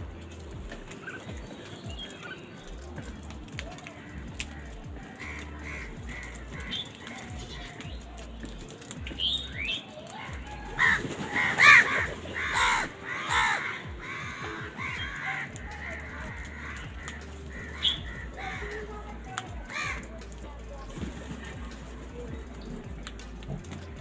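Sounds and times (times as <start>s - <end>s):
crows cawing: 3.6s - 8.1s, 9.6s - 20.2s.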